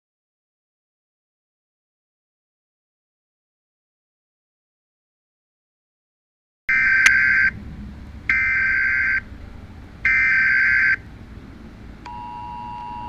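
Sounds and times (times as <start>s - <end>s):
two-tone attention signal: 12.1s - 13.0s.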